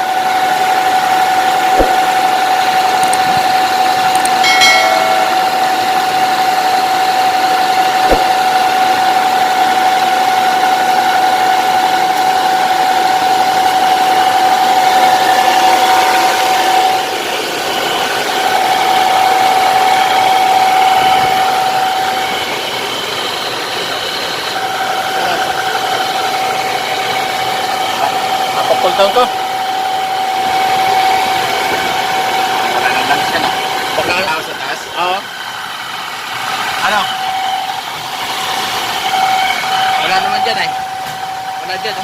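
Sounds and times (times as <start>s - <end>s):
drivetrain humming whine: 0.0s - 12.3s.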